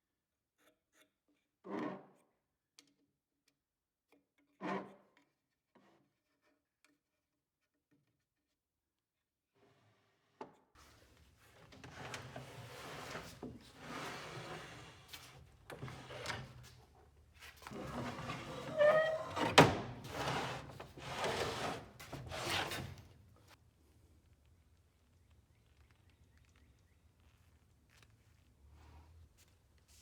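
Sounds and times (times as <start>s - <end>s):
wooden drawers scraping: 10.8s - 16.8s, 17.6s - 23.2s.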